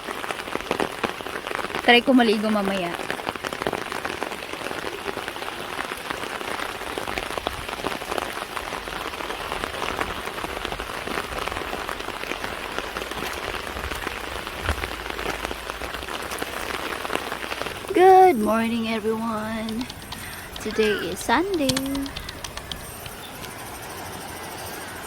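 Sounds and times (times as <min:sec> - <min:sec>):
rain pattering: 0:00.0 - 0:24.2.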